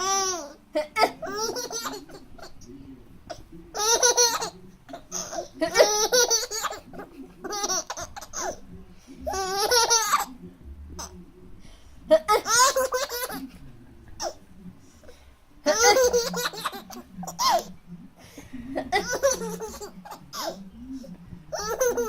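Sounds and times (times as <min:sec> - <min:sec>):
baby laughing: 0:00.0 - 0:02.7, 0:03.3 - 0:10.4, 0:12.1 - 0:13.6, 0:15.6 - 0:17.7, 0:18.8 - 0:20.6, 0:21.5 - 0:22.0.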